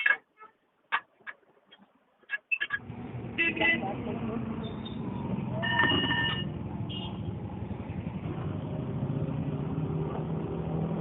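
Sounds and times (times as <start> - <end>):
traffic engine rumble: 2.4 - 11.0
vehicle horn toot: 5.6 - 7.2.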